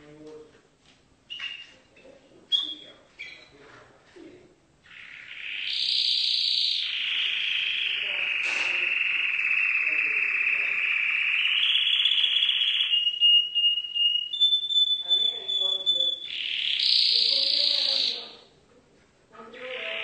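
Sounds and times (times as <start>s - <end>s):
canary singing a rapid trill: 4.9s - 18.5s, 19.4s - 20.0s.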